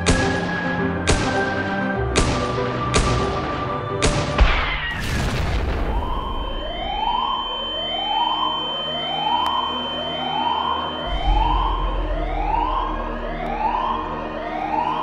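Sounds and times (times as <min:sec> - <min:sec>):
blast: 0:04.3 - 0:07.1
emergency siren sweeping up: 0:05.8 - 0:15.0
steady high tone: 0:06.2 - 0:15.0.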